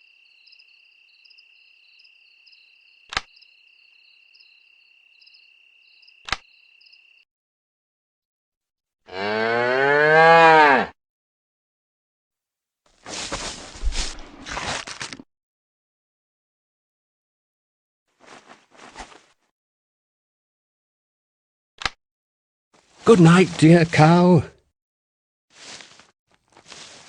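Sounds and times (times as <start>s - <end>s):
crickets chirping: 0.0s - 7.2s
sharp clicks: 3.1s - 3.4s, 6.2s - 6.5s
cow mooing: 9.1s - 11.0s.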